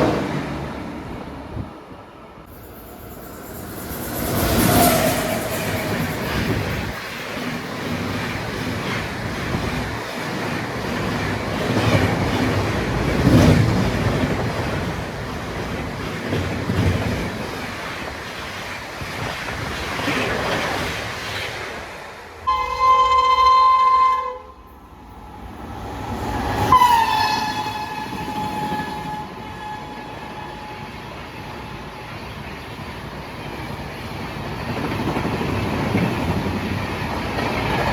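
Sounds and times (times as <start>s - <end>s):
train rumbling and rail clatter: 0.0s - 37.9s
locomotive horn: 22.5s - 24.7s, 26.7s - 31.0s.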